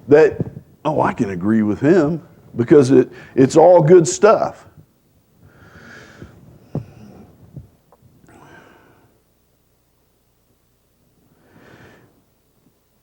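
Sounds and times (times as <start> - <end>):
man breathing close to microphone: 3.1 - 3.4, 5.4 - 9.2, 11.2 - 12.3.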